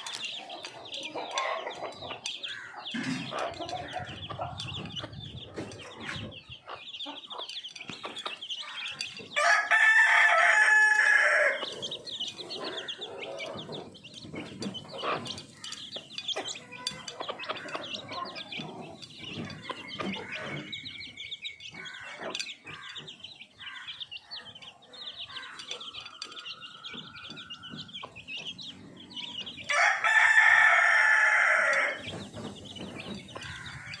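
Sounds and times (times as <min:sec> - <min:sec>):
chickens clucking: 0:00.0 - 0:34.0
rooster crowing: 0:09.4 - 0:11.6, 0:29.7 - 0:32.0.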